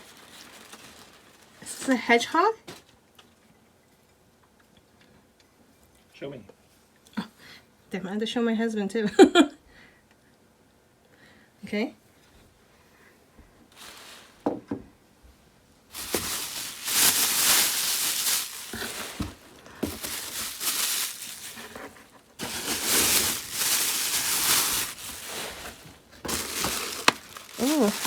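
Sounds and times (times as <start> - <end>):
packaging crinkling and rustling: 0.0 - 3.4, 13.7 - 14.6, 15.9 - 28.0.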